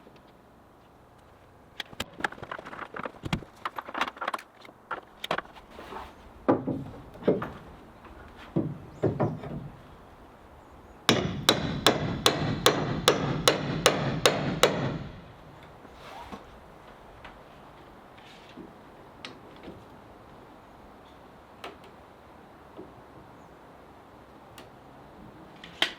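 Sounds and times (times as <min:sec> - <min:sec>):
hammer striking wood: 0:11.1 - 0:15.2.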